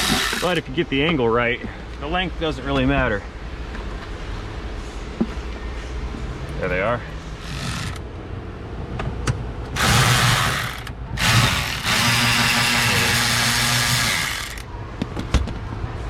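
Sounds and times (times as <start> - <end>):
cordless electric ratchet whirring: 0.0 - 0.6, 9.8 - 14.7.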